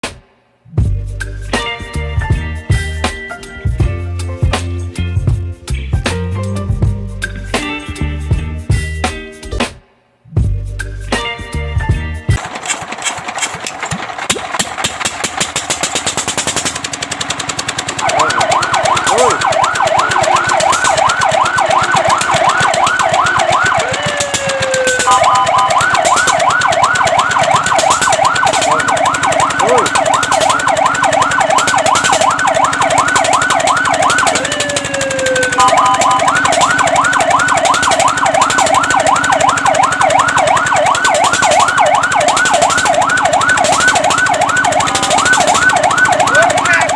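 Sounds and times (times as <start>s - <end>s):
fire truck siren yelping: 12.4s - 46.9s
rattling engine noise: 12.4s - 46.9s
two-note siren tone: 18.0s - 34.6s, 35.4s - 46.9s.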